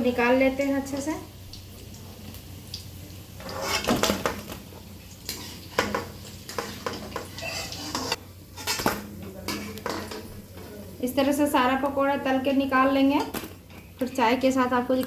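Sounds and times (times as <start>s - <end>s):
metal utensil scraping a frying pan: 3.4s - 4.5s, 5.3s - 10.7s.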